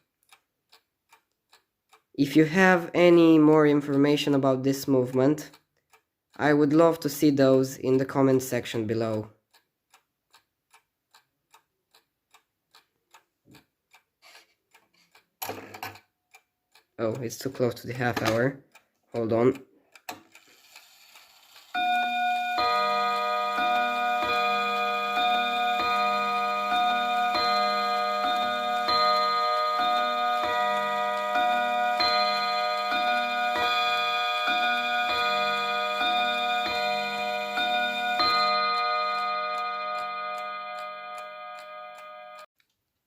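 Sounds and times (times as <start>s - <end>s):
mantel clock chime strikes: 21.8s - 42.5s.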